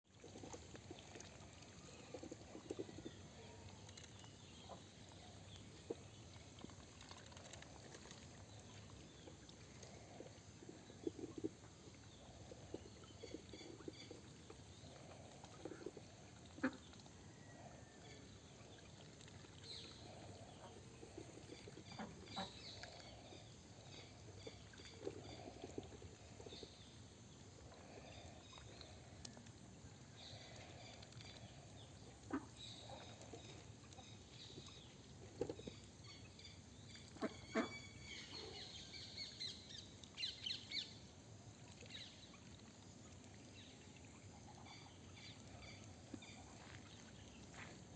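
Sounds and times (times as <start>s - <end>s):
ducks quacking: 37.2s - 37.7s.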